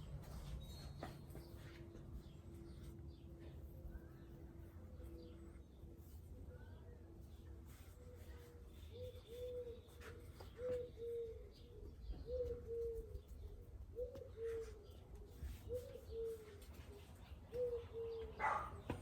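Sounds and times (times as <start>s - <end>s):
dove cooing: 8.9s - 16.7s, 17.4s - 19.0s.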